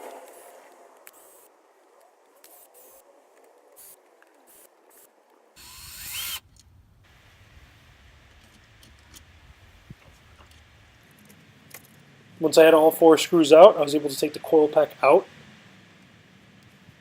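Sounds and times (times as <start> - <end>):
drill spinning up: 5.6 - 6.5.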